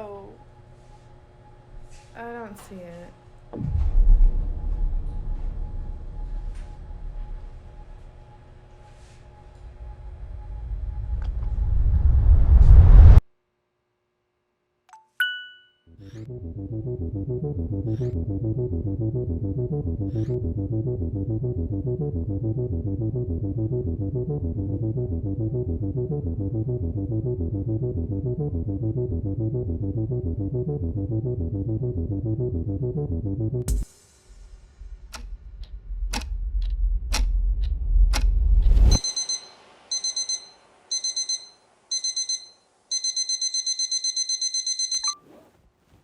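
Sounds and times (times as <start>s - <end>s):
instrumental music with low pulse: 0.0s - 12.0s, 15.9s - 39.4s
loud low sound: 3.5s - 8.6s, 9.4s - 13.2s, 16.2s - 39.0s
alarm clock beeping: 38.9s - 45.2s.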